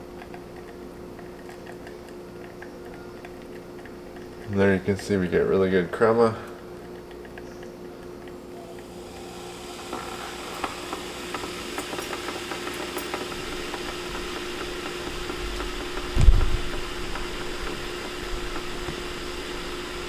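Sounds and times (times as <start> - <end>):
steady hum: 7.8 - 20.0
espresso machine hissing: 8.6 - 20.0
heavy thump: 16.1 - 16.9.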